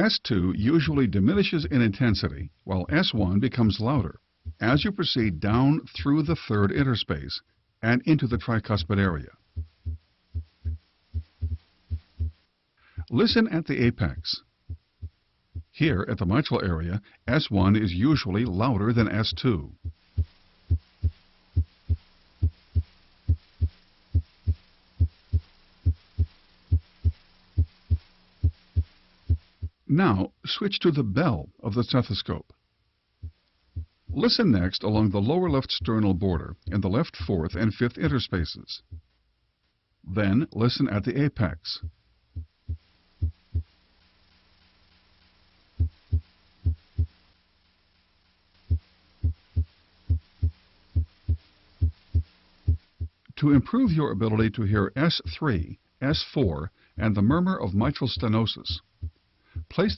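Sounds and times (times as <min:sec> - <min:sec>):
heartbeat through stethoscope: 0:04.4 - 0:04.7, 0:09.6 - 0:12.4, 0:14.1 - 0:15.8, 0:19.8 - 0:29.8, 0:33.2 - 0:34.3, 0:38.9 - 0:39.1, 0:41.8 - 0:43.7, 0:45.8 - 0:47.1, 0:48.7 - 0:53.2, 0:59.0 - 0:59.9.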